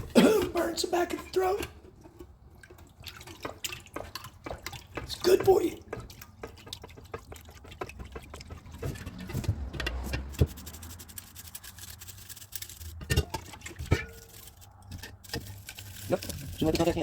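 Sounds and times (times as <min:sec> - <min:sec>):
small metal parts clicking and scraping: 0:08.4 - 0:17.0.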